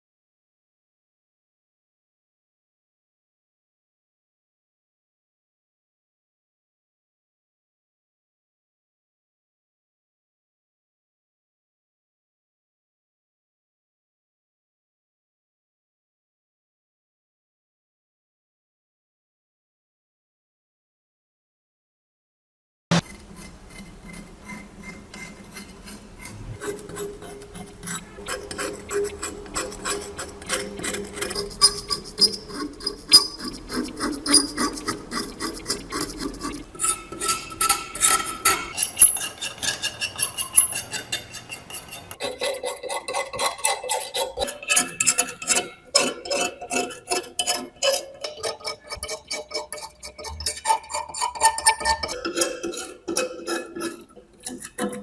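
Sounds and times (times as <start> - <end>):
tools scraping metal knife: 22.9 - 55.0.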